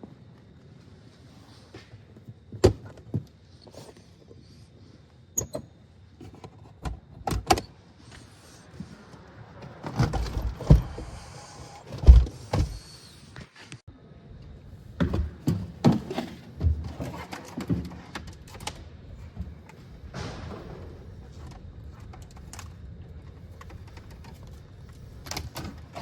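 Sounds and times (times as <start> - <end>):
tools and parts knocking and clunking: 2.5 - 4.0, 9.6 - 11.2, 15.0 - 26.0.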